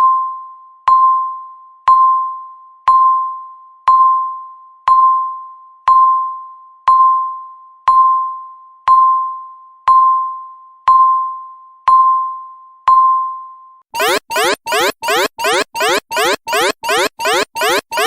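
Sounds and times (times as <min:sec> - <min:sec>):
countdown timer beeps: 0:14.0 - 0:18.0.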